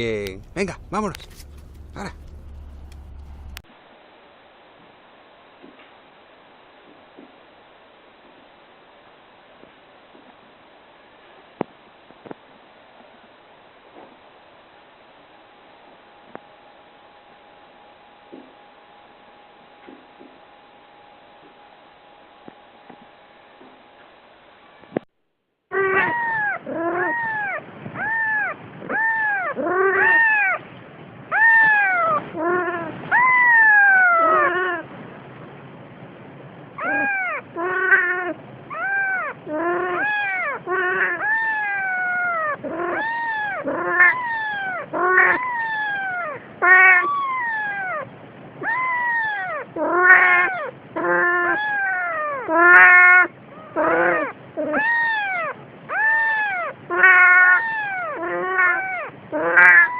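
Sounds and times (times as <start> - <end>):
cat meowing: 25.8 - 30.6, 31.3 - 34.8, 36.8 - 59.9.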